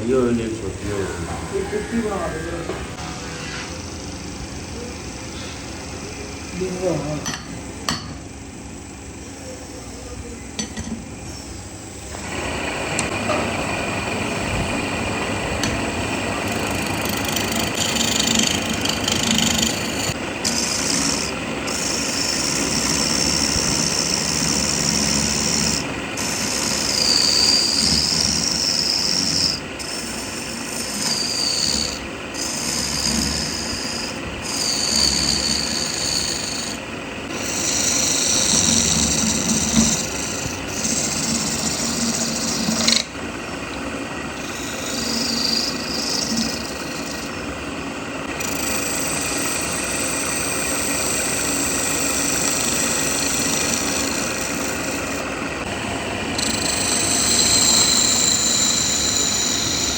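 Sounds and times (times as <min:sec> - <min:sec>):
abrasive tool grinding wood: 0:00.0 - 0:04.8, 0:12.1 - 0:59.9
wavering high whine: 0:00.0 - 0:07.9.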